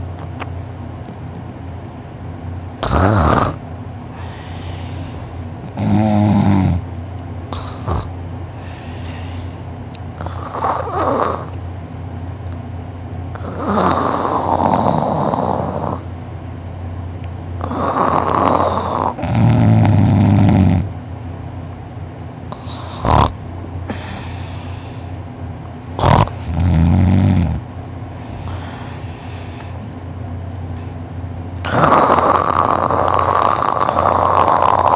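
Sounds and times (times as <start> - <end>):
sharp snorts: 2.8 - 3.6, 7.5 - 9.5, 22.6 - 24.7, 26.0 - 27.6, 31.6 - 34.9
person snoring heavily: 2.8 - 6.8, 7.5 - 9.6, 10.2 - 11.6, 13.4 - 16.1, 17.6 - 20.9, 22.6 - 25.1, 26.0 - 29.8, 31.6 - 34.9.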